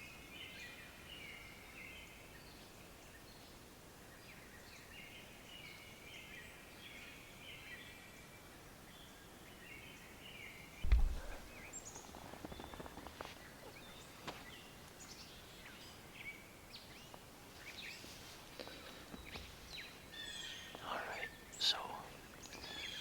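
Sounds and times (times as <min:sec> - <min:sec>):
songbirds chirping: 0:00.0 - 0:23.0
loud low thump: 0:10.8 - 0:11.6
faint crackling rustles: 0:10.8 - 0:16.0, 0:16.9 - 0:21.2.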